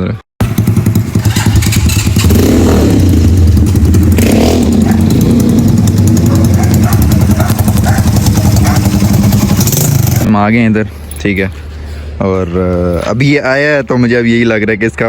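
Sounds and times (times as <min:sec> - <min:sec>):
motorcycle engine running loud: 0:00.4 - 0:10.3.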